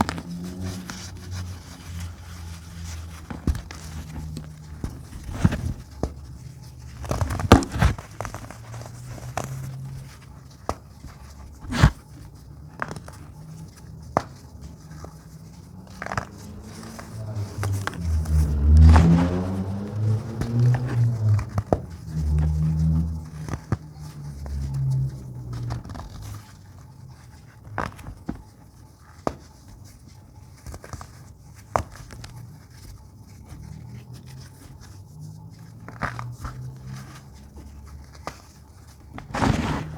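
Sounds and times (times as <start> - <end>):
baking soda crunching: 39.2 - 39.9.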